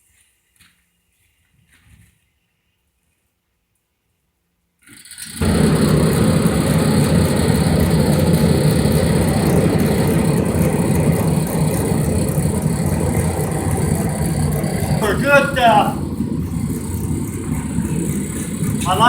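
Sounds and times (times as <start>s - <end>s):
furnace blower rushing drone: 5.4s - 19.0s.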